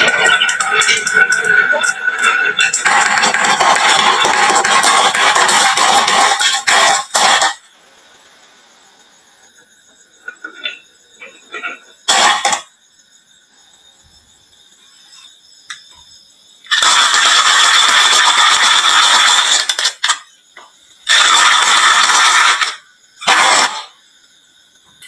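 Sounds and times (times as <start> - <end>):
marbles clattering down wooden run: 0.0 - 7.5.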